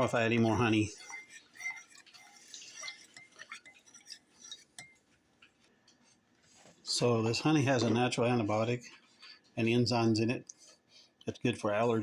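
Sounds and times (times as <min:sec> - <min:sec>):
spoon clinking against container: 0:00.0 - 0:05.0.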